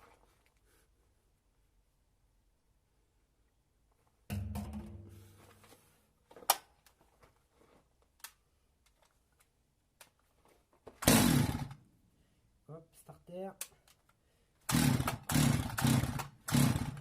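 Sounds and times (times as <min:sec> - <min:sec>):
dull knock with low ring: 0:04.3 - 0:05.2.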